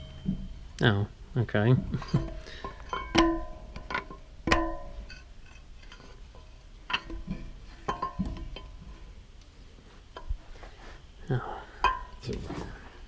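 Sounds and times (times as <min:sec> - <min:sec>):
ringing metal clanks: 0:00.0 - 0:08.9, 0:11.7 - 0:12.3.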